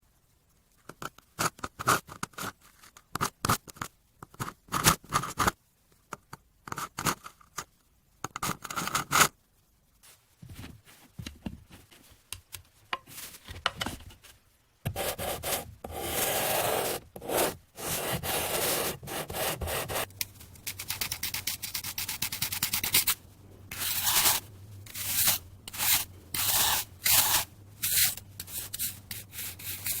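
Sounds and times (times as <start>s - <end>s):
metal ruler scraping sand: 15.0s - 20.1s, 20.7s - 30.0s.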